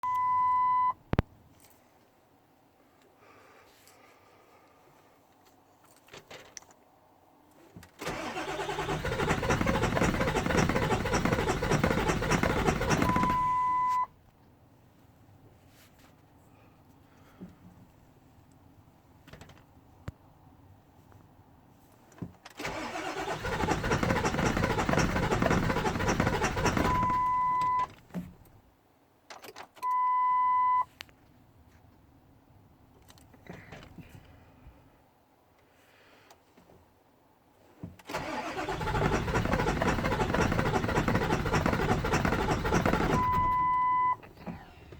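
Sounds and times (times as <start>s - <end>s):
diesel engine starter cranking: 8.0s - 14.0s, 22.6s - 28.6s, 38.1s - 44.9s
electronic beep: 13.1s - 14.0s.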